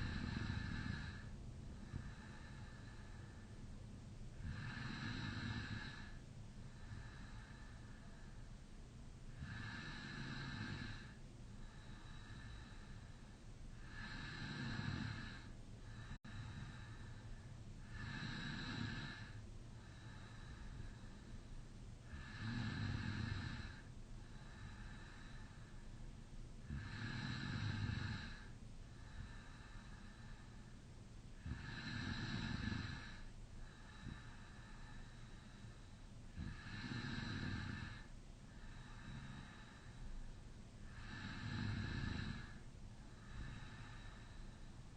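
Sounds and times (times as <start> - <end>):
person snoring: 0.0 - 1.3, 4.4 - 6.2, 9.4 - 11.2, 13.8 - 17.1, 17.8 - 21.2, 22.1 - 25.5, 26.6 - 28.5, 31.4 - 34.9, 36.3 - 39.9, 40.9 - 42.6
quiet breathing: 0.0 - 44.9.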